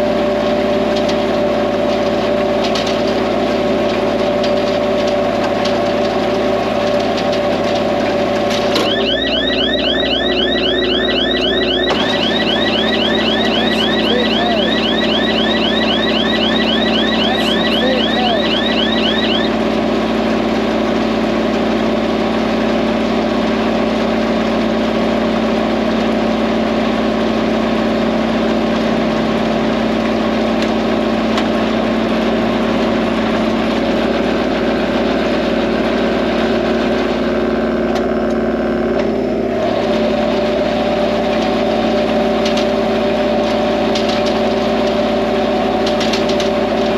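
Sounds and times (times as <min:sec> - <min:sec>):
diesel tractor engine running: 0:00.0 - 0:46.9
rapid electronic chirp: 0:08.8 - 0:19.6.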